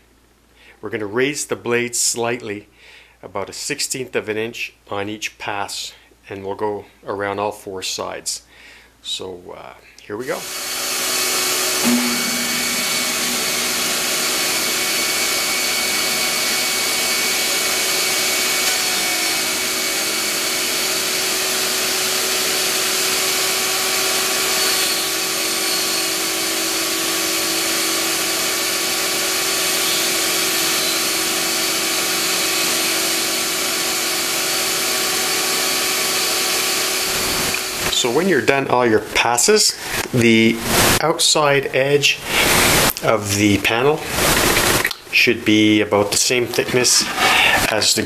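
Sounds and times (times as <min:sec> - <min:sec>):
table saw cutting wood: 0:10.3 - 0:38.8, 0:40.0 - 0:41.0, 0:42.3 - 0:45.0, 0:46.3 - 0:48.0.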